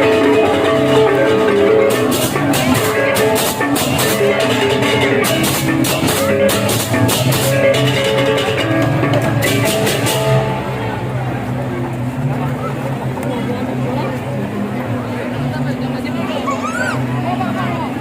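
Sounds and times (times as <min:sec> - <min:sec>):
ringing metallophone notes: 0:00.0 - 0:11.5
drums: 0:00.0 - 0:13.1.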